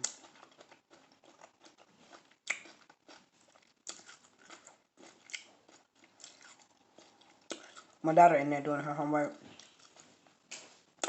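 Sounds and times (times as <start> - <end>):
chewing and biting: 0.0 - 8.0.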